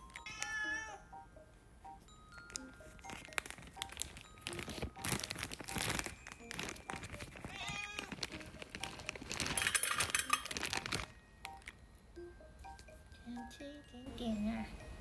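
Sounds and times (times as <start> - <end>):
light background music: 0.0 - 15.0
cat meowing: 0.2 - 1.0, 7.5 - 8.1
crinkling and rustling: 2.4 - 11.8.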